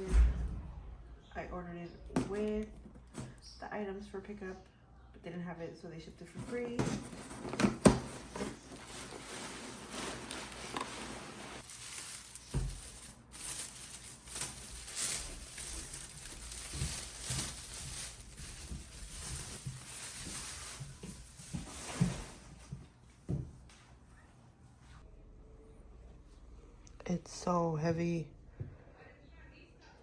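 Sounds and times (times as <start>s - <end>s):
packaging rustling and tearing: 7.1s - 22.0s.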